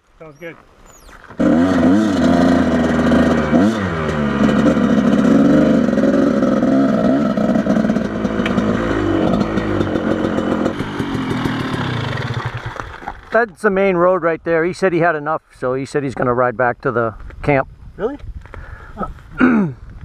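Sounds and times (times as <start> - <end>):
off-road motorcycle engine revving: 0.4 - 13.4.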